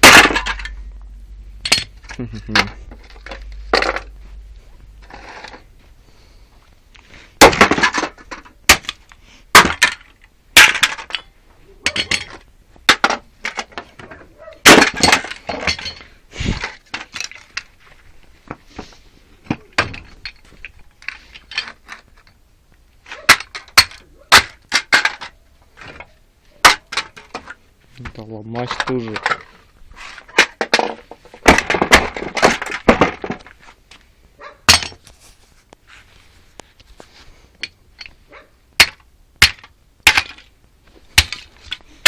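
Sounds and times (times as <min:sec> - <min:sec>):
small metal parts clinking: 0:00.0 - 0:01.0, 0:01.6 - 0:04.1, 0:07.6 - 0:17.7, 0:19.8 - 0:22.4.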